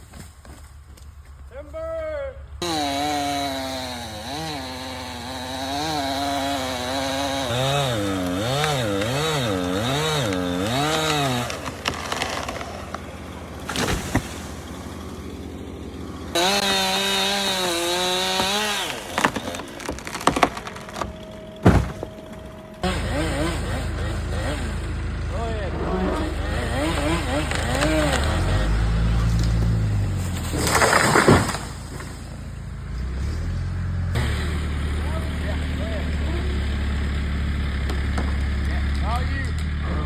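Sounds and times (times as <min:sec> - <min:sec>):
chainsaw cutting: 0:02.5 - 0:40.0
sharp knocks: 0:18.3 - 0:22.6.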